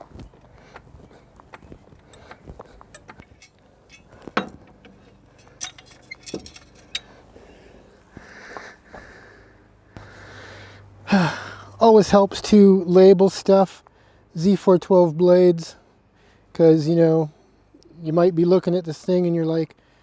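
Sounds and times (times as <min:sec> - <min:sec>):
metal hardware clinking: 0:02.0 - 0:07.3.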